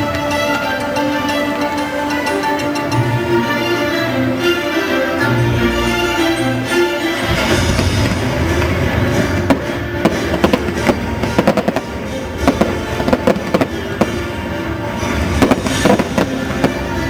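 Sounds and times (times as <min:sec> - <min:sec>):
fireworks bangs and crackles: 0:00.0 - 0:02.2, 0:07.2 - 0:17.0
loud show music: 0:00.0 - 0:17.0.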